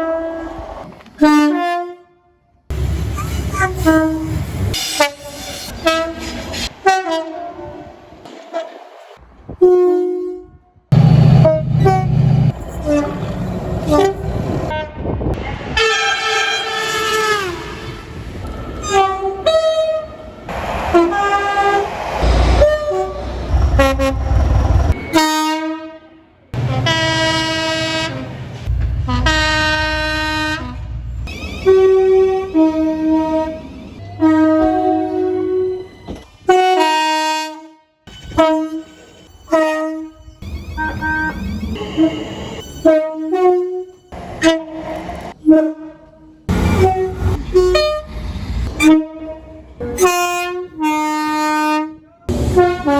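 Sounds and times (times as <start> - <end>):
low rumble of trains: 0.0 - 52.9
train horn blasts: 1.2 - 2.4, 3.5 - 8.8, 9.5 - 18.1, 25.0 - 31.0, 31.6 - 35.9, 36.5 - 48.1, 48.8 - 52.9.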